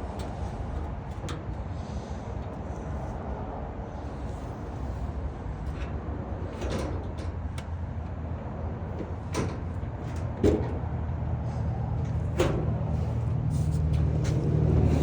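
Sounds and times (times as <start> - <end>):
steady low hum: 11.4 - 15.0.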